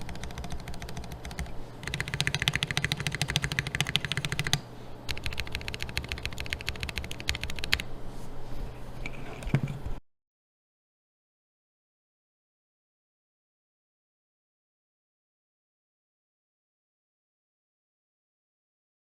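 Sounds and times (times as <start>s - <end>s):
mechanical keyboard typing: 0.0s - 7.8s
faint low hum: 0.0s - 10.0s.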